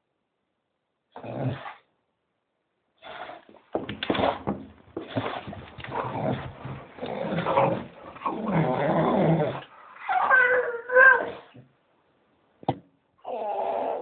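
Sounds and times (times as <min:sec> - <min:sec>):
dog growling: 0:01.2 - 0:01.8, 0:05.1 - 0:11.6
dog whining: 0:07.4 - 0:11.6, 0:13.2 - 0:14.0.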